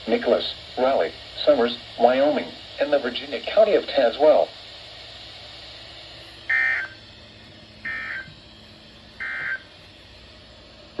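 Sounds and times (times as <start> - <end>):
radio hiss: 0.0 - 11.0
digital data tone bursts: 6.5 - 7.0, 7.8 - 8.3, 9.2 - 9.7.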